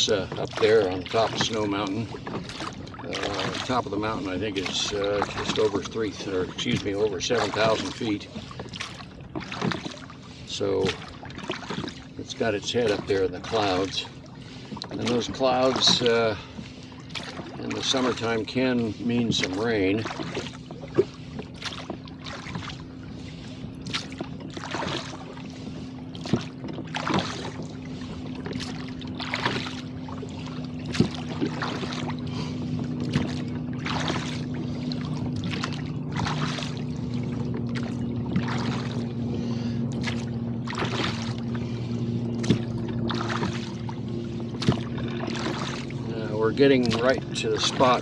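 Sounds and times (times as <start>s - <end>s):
water splashing: 0.0s - 48.0s
steady low hum: 20.8s - 48.0s.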